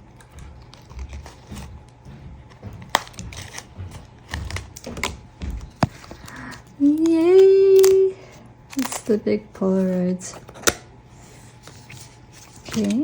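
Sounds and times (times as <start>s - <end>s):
soft low thumps: 0.4s - 6.2s
packaging clicks and taps: 2.8s - 8.0s, 8.7s - 9.2s, 12.6s - 13.0s.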